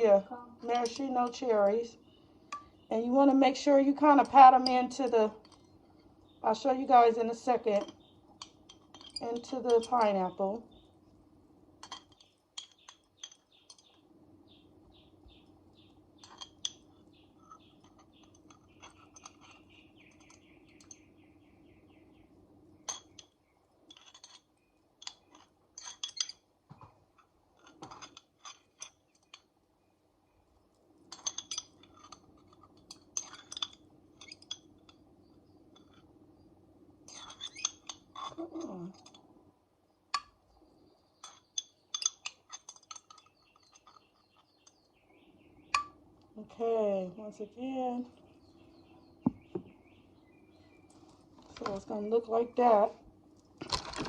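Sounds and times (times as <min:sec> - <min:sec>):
faint hum: 0:00.0 - 0:28.2
utensils clinking against glass: 0:07.7 - 0:10.4, 0:22.9 - 0:26.4, 0:41.2 - 0:44.8.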